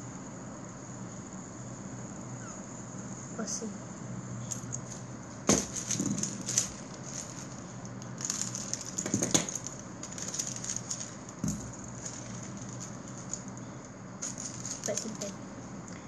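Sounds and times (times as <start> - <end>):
plastic packaging crinkling: 4.7 - 15.4.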